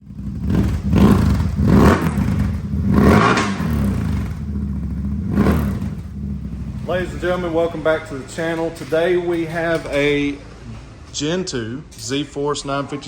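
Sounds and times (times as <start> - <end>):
engine revving through exhaust: 0.0 - 8.6.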